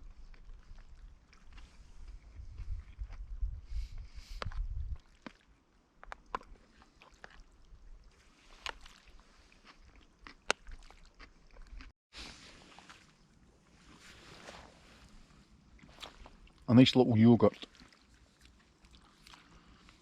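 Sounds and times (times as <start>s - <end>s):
wind rumble on microphone: 0.0s - 5.2s.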